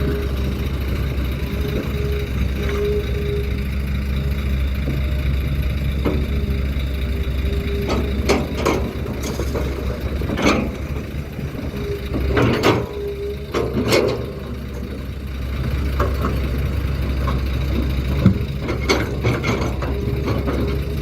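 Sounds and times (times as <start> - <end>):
heavy machinery engine rumble: 0.0 - 21.0
sharp knocks and clanks: 7.7 - 14.6.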